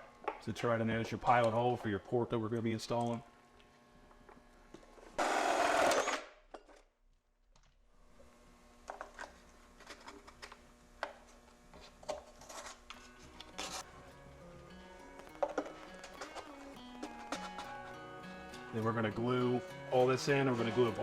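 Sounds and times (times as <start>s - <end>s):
power drill burst: 5.2s - 6.4s.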